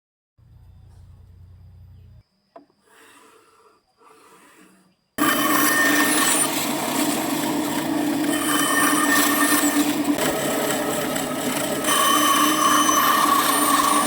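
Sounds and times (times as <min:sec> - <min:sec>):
faint hum: 0:00.4 - 0:06.4
bandsaw cutting wood: 0:05.2 - 0:14.0.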